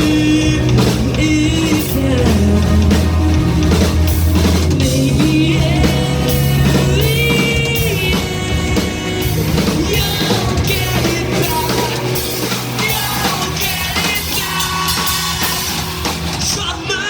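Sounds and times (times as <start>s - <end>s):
drum kit hitting: 0.0s - 17.0s
live rock band playing: 0.0s - 17.0s.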